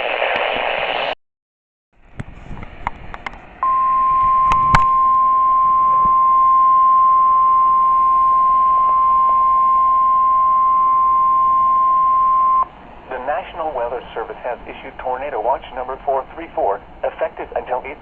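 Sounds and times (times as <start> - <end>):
radio static crackles: 0.0 - 1.2, 13.1 - 18.0
steady alarm tone: 3.6 - 12.7.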